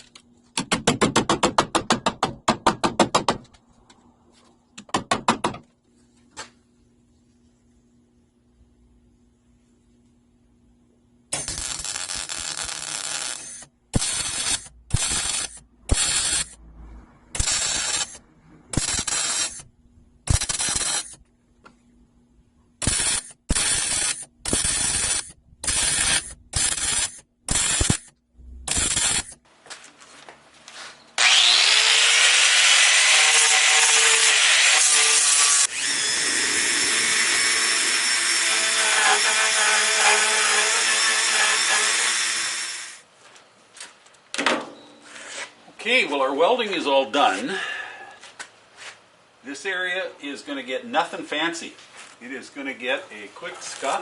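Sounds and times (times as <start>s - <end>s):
power grinder on metal: 11.4s - 16.6s, 17.4s - 19.6s, 31.2s - 43.0s
welder crackling sizzle: 11.4s - 16.6s, 18.8s - 19.6s, 20.3s - 21.2s, 22.8s - 28.1s, 28.7s - 29.4s.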